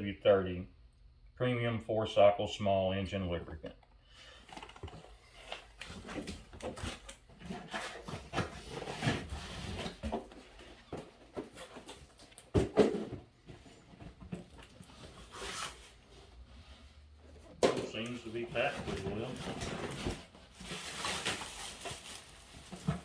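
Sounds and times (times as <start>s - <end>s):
cardboard box rustling: 18.6s - 23.0s.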